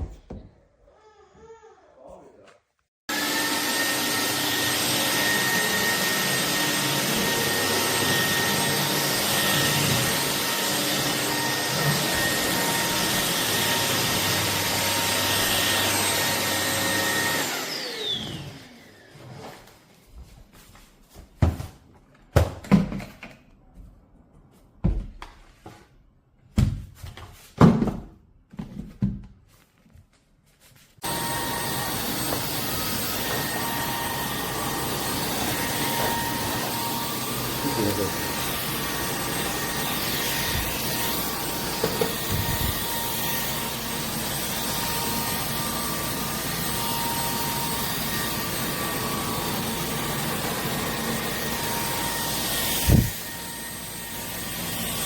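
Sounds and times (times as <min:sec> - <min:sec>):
knocks and thumps: 0:00.0 - 0:00.7
stick vacuum whining: 0:03.1 - 0:19.6, 0:31.0 - 0:55.0.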